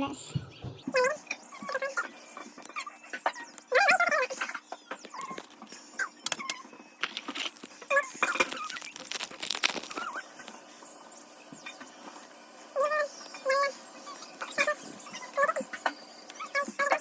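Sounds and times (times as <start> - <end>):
foil packs and cards crackling: 5.0 - 6.4, 7.0 - 10.6.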